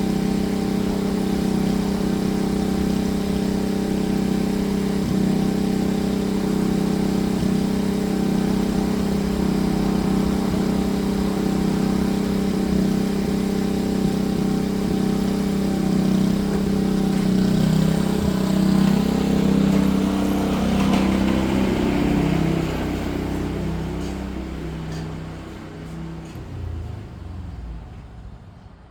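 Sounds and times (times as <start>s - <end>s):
lawn mower engine running: 0.0s - 28.9s.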